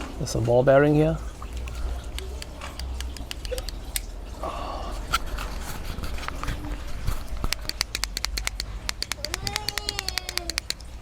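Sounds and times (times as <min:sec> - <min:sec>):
fidget toy clicking: 0:02.1 - 0:04.0, 0:07.5 - 0:11.0.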